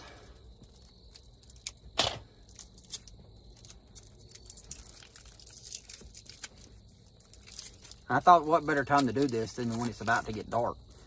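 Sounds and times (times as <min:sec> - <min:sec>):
packaging crinkling and rustling: 0:02.4 - 0:11.0.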